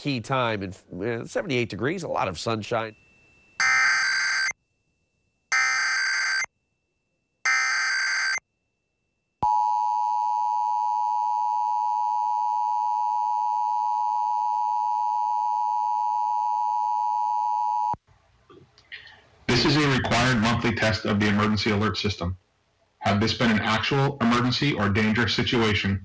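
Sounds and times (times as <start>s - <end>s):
steady two-tone alert signal: 2.9s - 4.6s, 7.5s - 8.4s.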